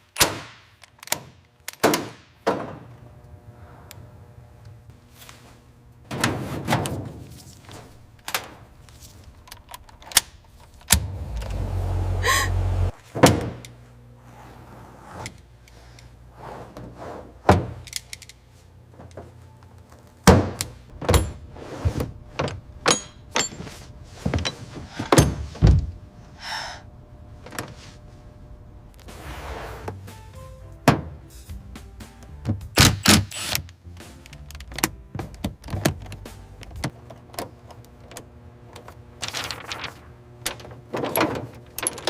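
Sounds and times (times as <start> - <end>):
low steady hum: 2.9 - 30.0.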